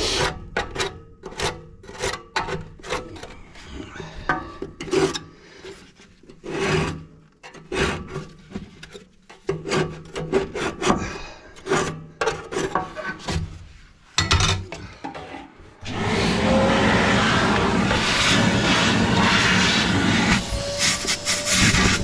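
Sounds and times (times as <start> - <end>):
scraping strokes on brick: 15.8 - 22.0.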